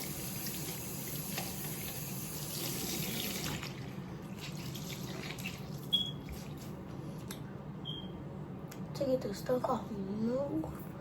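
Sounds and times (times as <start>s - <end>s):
sink tap running: 0.0s - 3.7s.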